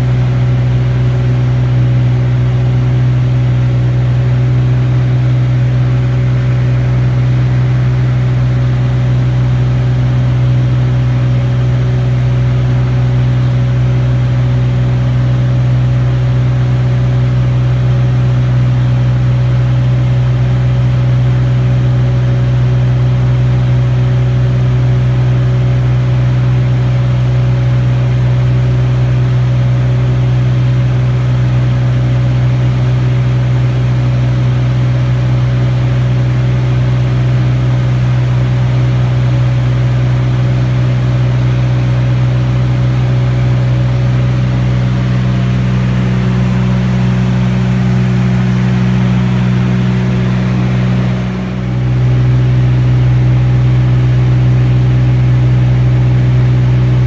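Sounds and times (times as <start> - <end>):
aircraft engine droning: 39.2 - 57.0.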